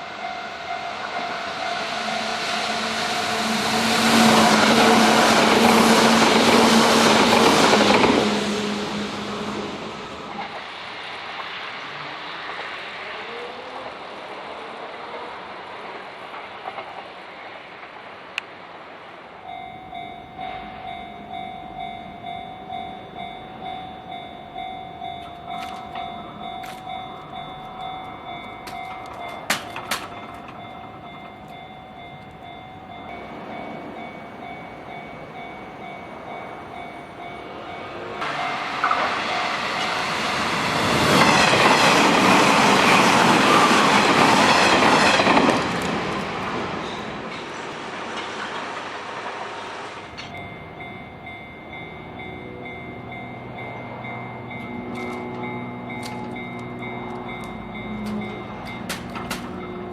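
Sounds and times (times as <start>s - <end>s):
level crossing bell clanging: 0.0s - 2.4s, 19.4s - 47.5s, 50.0s - 59.9s
electric train running: 0.0s - 18.4s, 19.2s - 59.9s
approaching train rumble: 0.0s - 59.9s.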